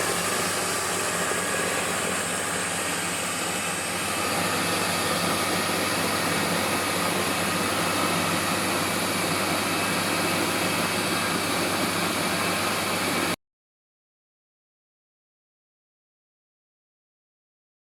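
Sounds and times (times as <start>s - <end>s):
milling machine whirring: 0.0s - 13.4s.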